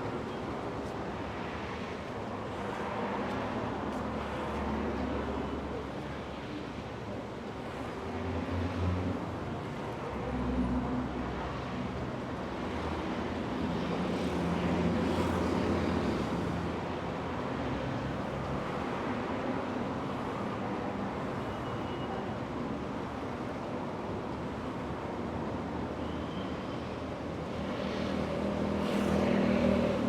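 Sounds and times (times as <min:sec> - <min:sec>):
vehicles passing: 0:27.4 - 0:30.0.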